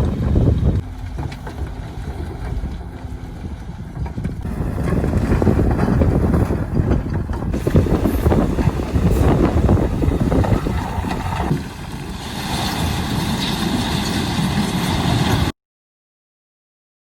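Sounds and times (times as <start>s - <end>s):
diesel construction machinery rumbling: 0.0s - 15.5s.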